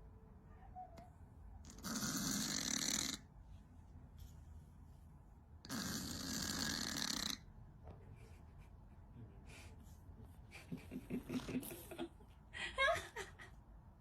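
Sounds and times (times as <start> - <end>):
cat snoring: 1.7 - 3.2, 5.7 - 7.4.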